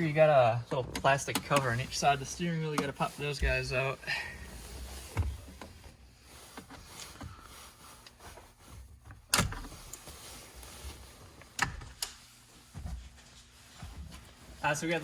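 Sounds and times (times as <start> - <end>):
faint scraping and handling: 1.4 - 11.6.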